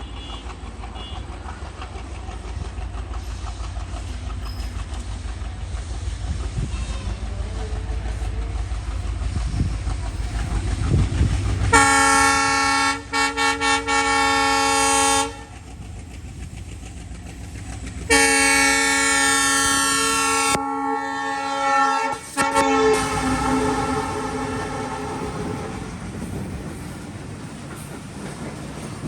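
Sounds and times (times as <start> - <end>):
locomotive horn blasts: 0.0 - 1.2, 6.6 - 7.6, 11.7 - 15.6, 18.1 - 26.0
moving train rumble: 0.0 - 29.0.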